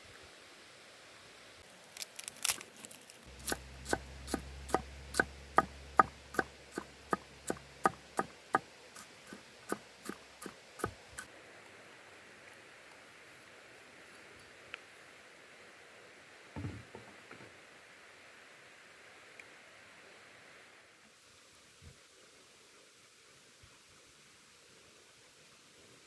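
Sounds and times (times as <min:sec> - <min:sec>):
knife chopping on wooden board: 0:03.3 - 0:11.3.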